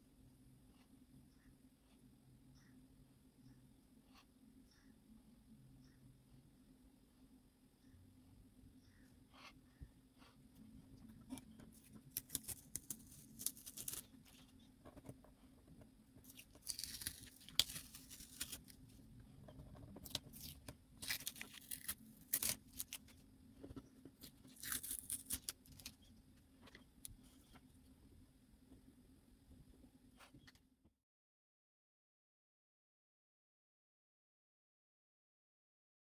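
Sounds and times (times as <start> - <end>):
tape peeling off paper: 11.8 - 14.4, 16.3 - 18.8, 20.0 - 23.2, 24.2 - 26.0.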